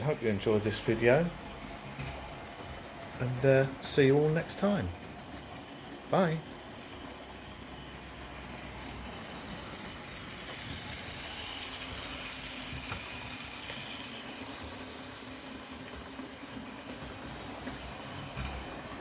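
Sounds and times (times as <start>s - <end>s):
model train motor whirring: 7.0s - 19.0s.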